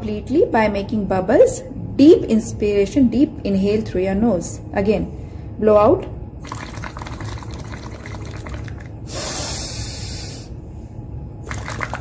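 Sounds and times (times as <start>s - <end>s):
bubbling through a straw in water: 6.4s - 9.4s, 11.4s - 12.0s
loud hiss of breath: 9.1s - 10.6s.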